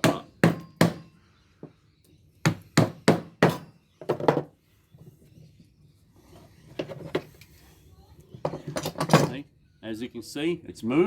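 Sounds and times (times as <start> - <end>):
hammer striking wood block: 0.0 - 1.1, 2.5 - 3.7.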